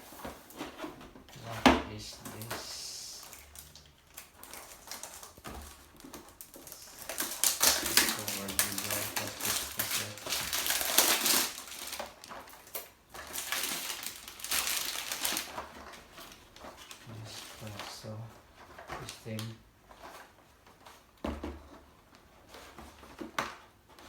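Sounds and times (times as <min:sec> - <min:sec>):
packaging rustling and tearing: 0:00.0 - 0:21.2.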